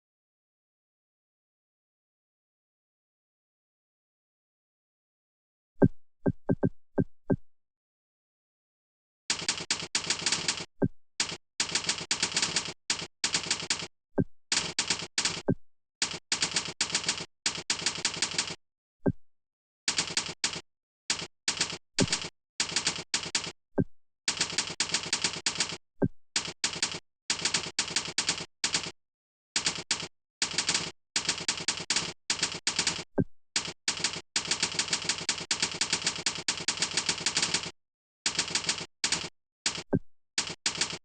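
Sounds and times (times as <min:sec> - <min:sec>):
rapid keyboard typing: 0:09.3 - 0:13.9, 0:14.5 - 0:18.6, 0:19.9 - 0:23.6, 0:24.3 - 0:25.8, 0:26.4 - 0:29.0, 0:29.6 - 0:41.0.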